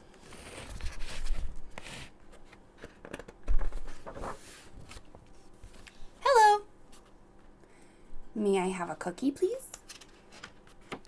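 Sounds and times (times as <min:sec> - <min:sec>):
book pages turning: 0:00.1 - 0:05.9.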